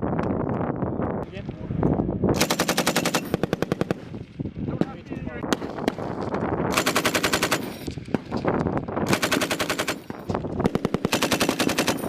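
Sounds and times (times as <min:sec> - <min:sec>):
machine-gun fire bursts: 0:02.4 - 0:04.1, 0:06.7 - 0:08.3, 0:09.0 - 0:12.0.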